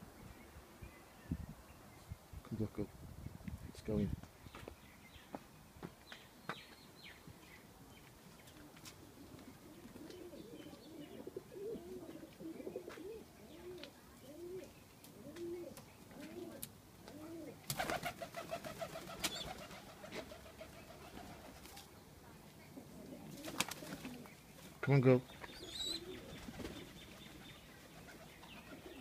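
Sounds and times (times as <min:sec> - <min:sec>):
pigeon cooing: 0:09.0 - 0:21.4, 0:25.6 - 0:26.9.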